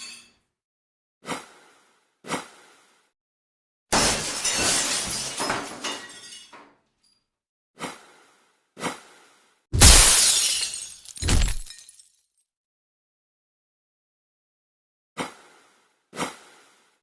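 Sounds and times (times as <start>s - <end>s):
glass breaking: 3.9s - 6.8s, 9.8s - 12.4s
glass pieces tinkling: 10.3s - 12.4s.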